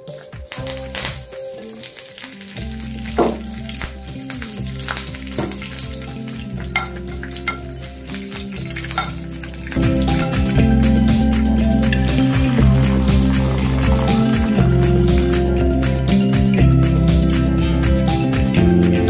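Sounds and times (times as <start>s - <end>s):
background music sustained notes: 0.0s - 19.0s
food sizzling in hot oil: 0.0s - 19.0s
oil popping: 0.0s - 19.0s.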